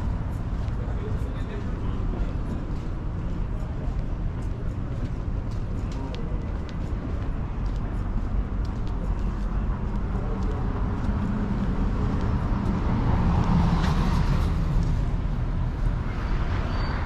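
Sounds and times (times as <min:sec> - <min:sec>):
traffic engine rumble and road noise: 0:00.0 - 0:17.0
vehicle passing: 0:09.9 - 0:16.4.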